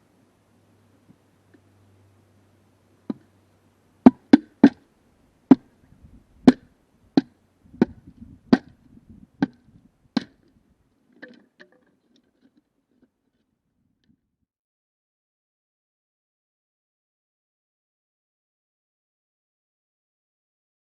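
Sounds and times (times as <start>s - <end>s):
sharp knocks on bamboo: 4.1s - 4.8s, 7.2s - 8.8s, 10.2s - 10.4s.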